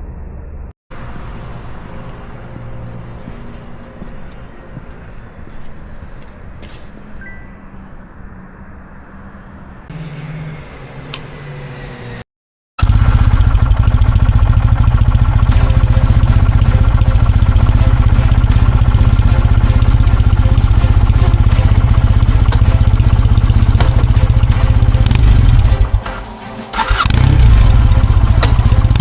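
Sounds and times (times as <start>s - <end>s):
motorcycle engine running: 12.8s - 29.0s.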